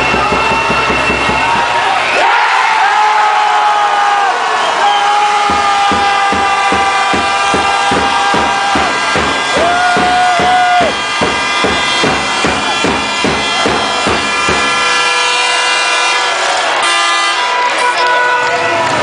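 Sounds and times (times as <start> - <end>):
loud music with drum beat: 0.0 - 2.1, 5.3 - 15.2.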